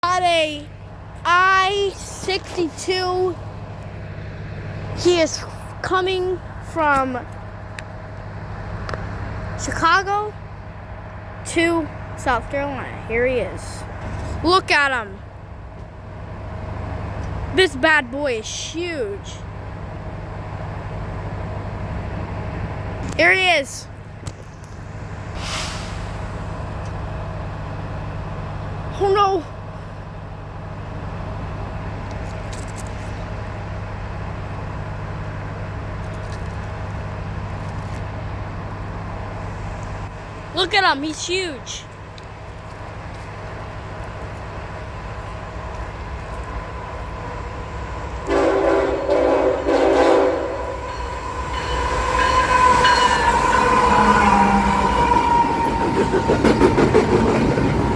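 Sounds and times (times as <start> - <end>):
diesel train engine drone: 0.0 - 57.9
wheels clicking over rail joints: 30.8 - 57.9
steady high tone: 46.9 - 56.6
locomotive air horn chord: 48.1 - 55.8
metallic squeals and clanks: 48.3 - 57.1.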